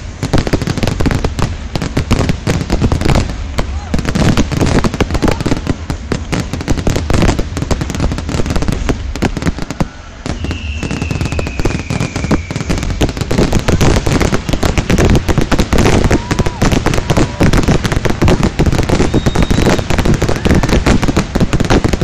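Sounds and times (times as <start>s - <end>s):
fireworks bangs and crackles: 0.0s - 22.0s
high falling whistle: 9.8s - 13.4s, 18.9s - 20.7s.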